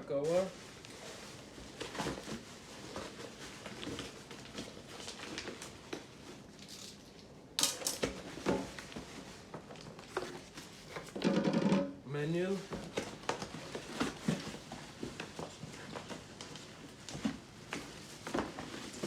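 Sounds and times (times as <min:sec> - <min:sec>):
plastic packaging rustling: 0:00.2 - 0:11.2, 0:12.4 - 0:19.0
parts knocking when set down: 0:11.1 - 0:12.0.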